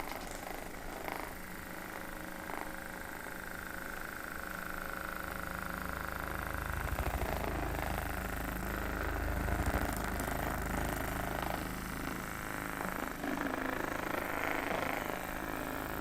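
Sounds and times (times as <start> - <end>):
electric massager humming: 0.0 - 16.0.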